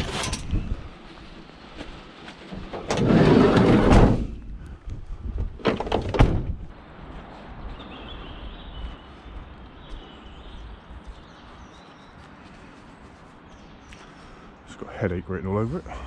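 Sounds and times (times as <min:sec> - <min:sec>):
scrap scraping rumble: 0:00.0 - 0:00.9, 0:02.4 - 0:04.5.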